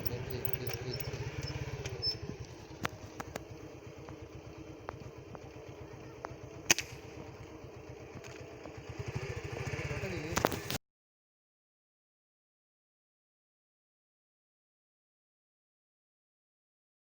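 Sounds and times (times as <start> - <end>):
small engine running: 0.0 - 10.8.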